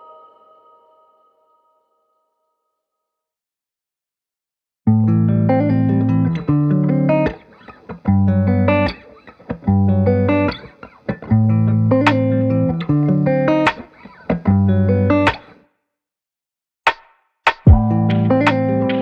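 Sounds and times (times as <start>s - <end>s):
plucked string music: 17.7s - 19.0s.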